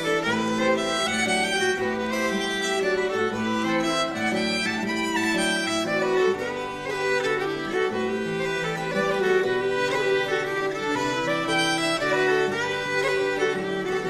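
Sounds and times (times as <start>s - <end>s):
fiddle melody with accompaniment: 0.0s - 14.0s.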